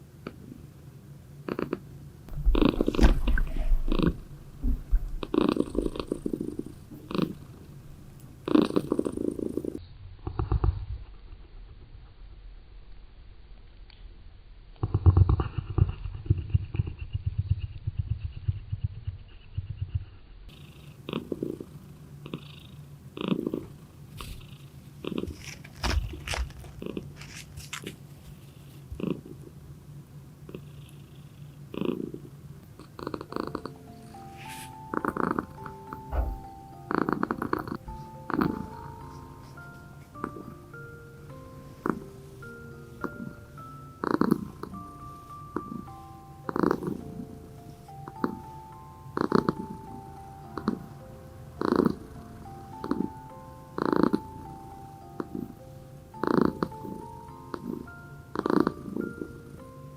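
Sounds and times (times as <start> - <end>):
cat purring: 1.4 - 12.0, 14.8 - 29.8, 30.4 - 59.9
sharp clicks and crunches: 25.1 - 28.0.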